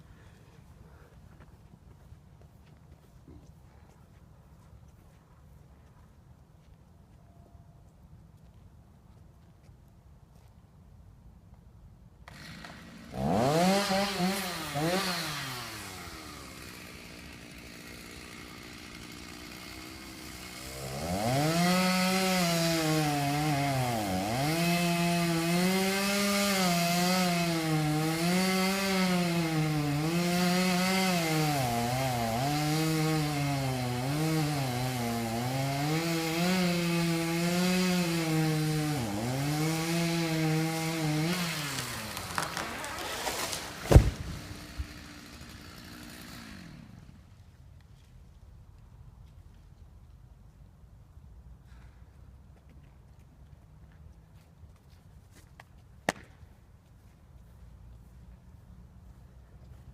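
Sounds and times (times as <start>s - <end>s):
chainsaw cutting wood: 12.2s - 47.6s
chainsaw revving and idling: 12.3s - 47.4s.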